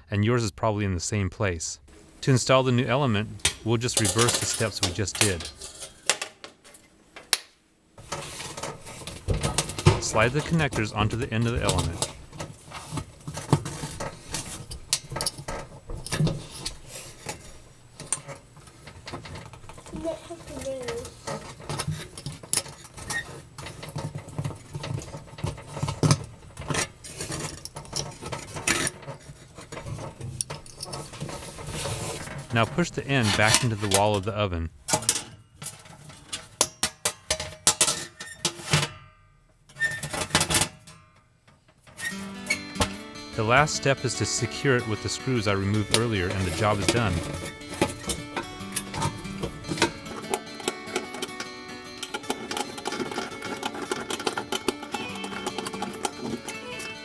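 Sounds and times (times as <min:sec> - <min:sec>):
metal clanks and knocks: 0:03.3 - 0:06.8, 0:08.0 - 0:34.2, 0:34.8 - 0:39.0, 0:41.9 - 0:57.0
metallic clicks and scrapes: 0:03.3 - 0:07.3, 0:08.0 - 0:34.2, 0:41.9 - 0:57.0.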